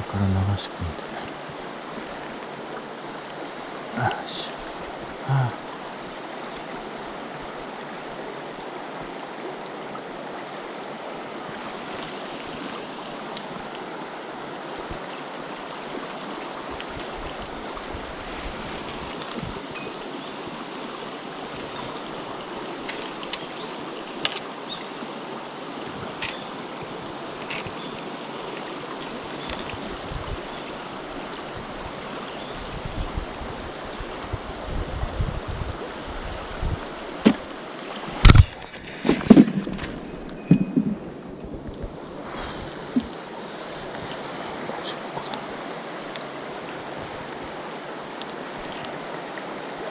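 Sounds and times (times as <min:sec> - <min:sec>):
stream rushing over rocks: 0:00.0 - 0:49.9
low bumps: 0:38.3 - 0:42.1.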